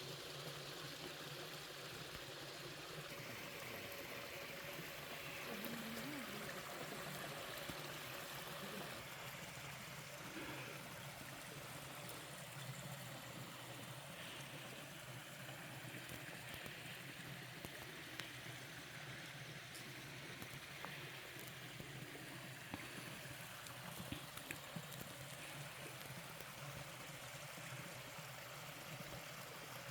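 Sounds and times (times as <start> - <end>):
stream water running over rocks: 0.0 - 29.9
faint ticks: 17.6 - 18.4.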